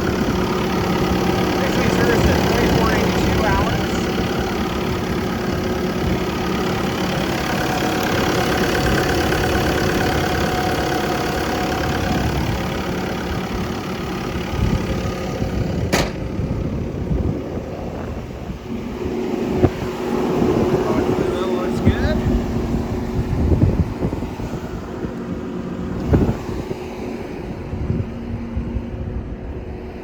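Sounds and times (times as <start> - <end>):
diesel engine idling: 0.0 - 30.0
sharp click: 15.9 - 16.3.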